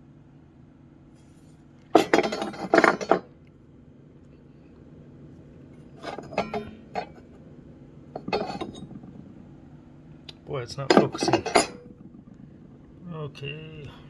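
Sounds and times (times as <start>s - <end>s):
metal tools clinking: 1.9s - 3.3s, 6.0s - 7.3s, 8.2s - 9.2s, 10.8s - 12.4s.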